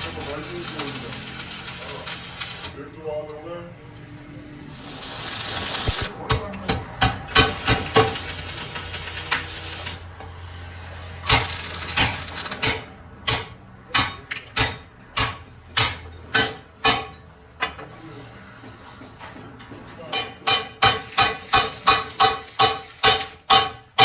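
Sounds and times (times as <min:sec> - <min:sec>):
harsh steady noise: 0:04.4 - 0:10.1
hammer striking metal: 0:05.9 - 0:08.3, 0:11.2 - 0:17.3, 0:20.1 - 0:24.0.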